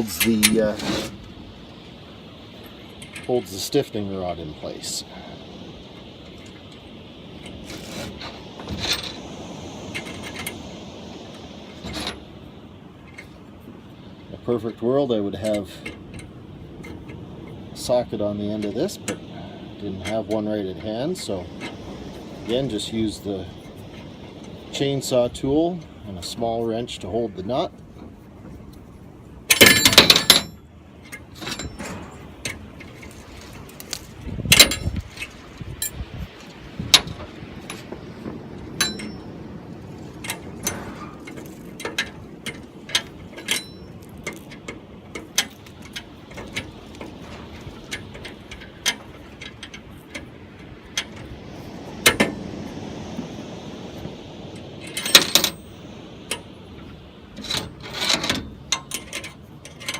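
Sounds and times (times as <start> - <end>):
metal hand tools clinking: 29.5 - 33.2, 38.8 - 39.3, 40.2 - 50.3, 54.8 - 56.4.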